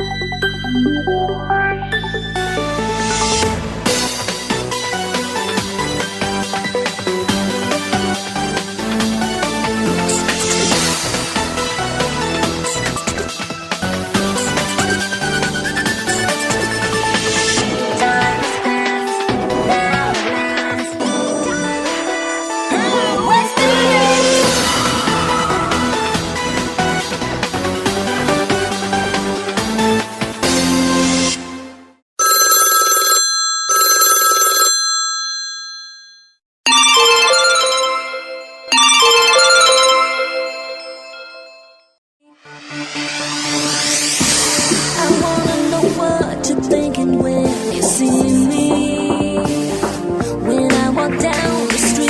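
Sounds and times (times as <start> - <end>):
telephone bell ringing: 32.2 - 41.9
electronic dance ringtone: 36.7 - 41.5.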